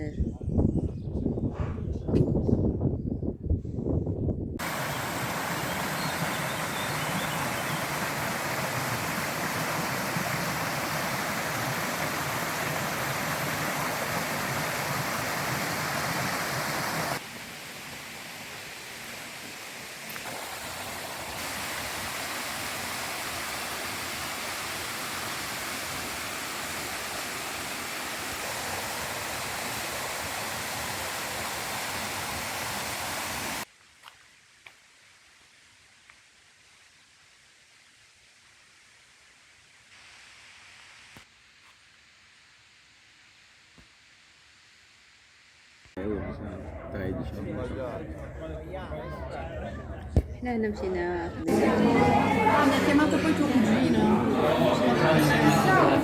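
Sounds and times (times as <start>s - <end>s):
wind rushing over microphone: 0.0s - 5.4s.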